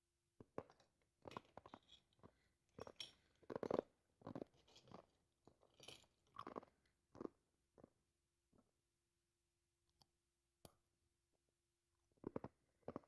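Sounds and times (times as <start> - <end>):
ice crunching while chewed: 0.4 - 8.0, 12.2 - 13.0.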